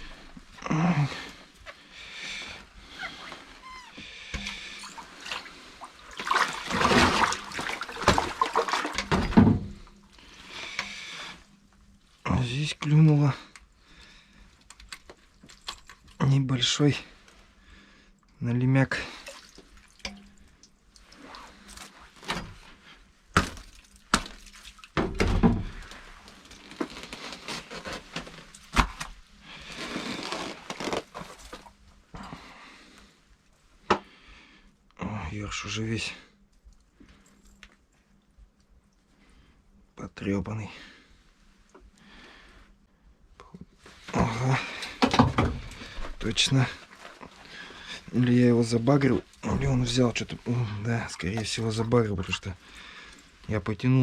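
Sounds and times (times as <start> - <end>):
water splashing and sloshing: 0.0 - 13.0, 13.6 - 16.3, 18.9 - 33.6, 43.7 - 53.5
rustling scraping: 25.9 - 28.8, 29.5 - 31.7.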